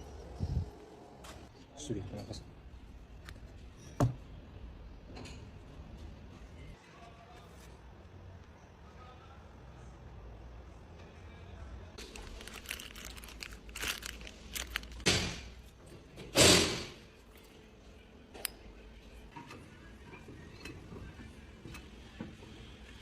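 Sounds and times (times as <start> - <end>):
rustling: 12.0 - 15.1.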